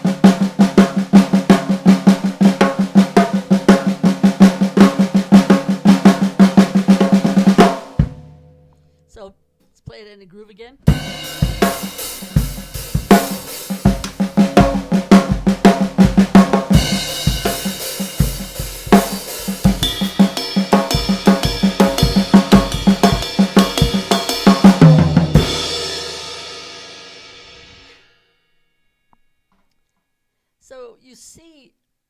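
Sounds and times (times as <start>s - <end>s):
drum kit playing a fast groove: 0.0s - 8.4s, 10.9s - 28.0s.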